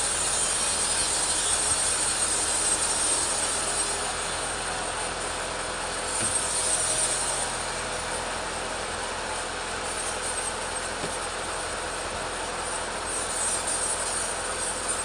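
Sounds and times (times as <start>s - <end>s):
chainsaw cutting log: 0.0s - 8.5s.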